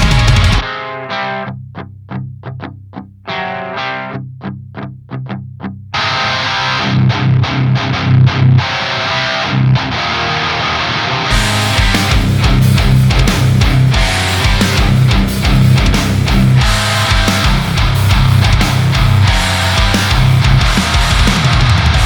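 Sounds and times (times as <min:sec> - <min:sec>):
full band with drums: 0:00.0 - 0:00.7, 0:11.3 - 0:22.0
distorted electric guitar riff: 0:00.0 - 0:02.7, 0:03.3 - 0:22.0.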